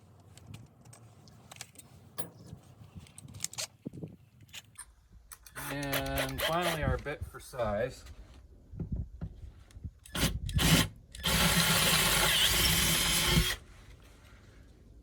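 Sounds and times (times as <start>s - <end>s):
power drill drilling: 10.1s - 13.6s.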